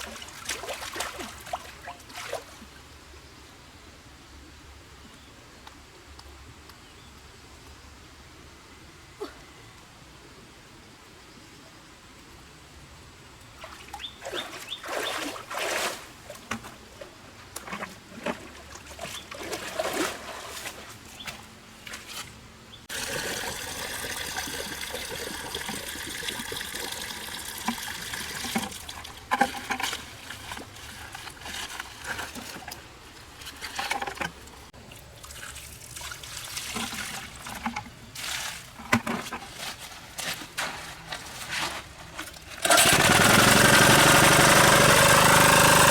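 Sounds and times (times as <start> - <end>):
water splashing and trickling: 0.0 - 2.9, 13.4 - 43.3
pouring water: 22.9 - 30.9, 34.9 - 38.5.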